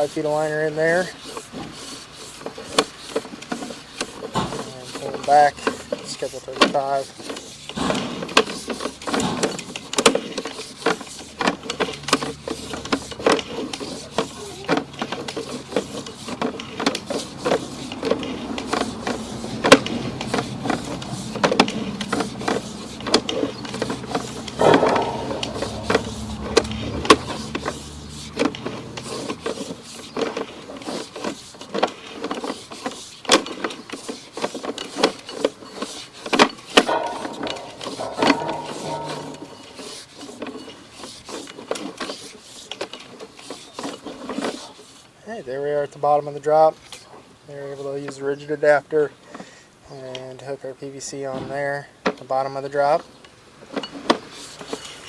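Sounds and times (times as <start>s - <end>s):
steady mechanical hum: 0.0s - 39.9s.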